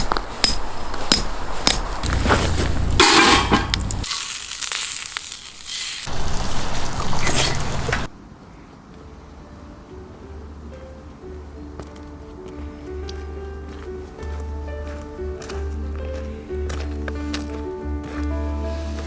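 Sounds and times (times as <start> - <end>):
food sizzling in frying: 2.1 - 8.1.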